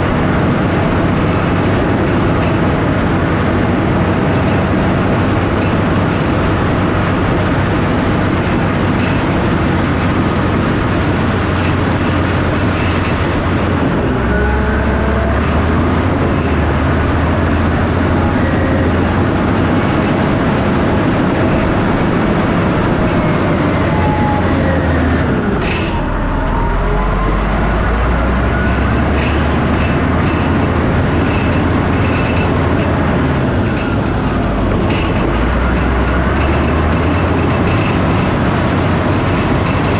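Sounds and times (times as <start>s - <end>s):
earthmoving machine engine under load: 0.0s - 39.9s
faint squeals: 22.6s - 30.2s.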